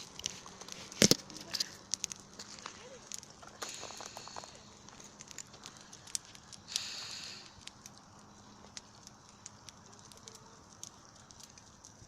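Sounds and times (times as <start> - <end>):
campfire crackling: 0.0 - 12.0
hissing rush: 2.8 - 9.8.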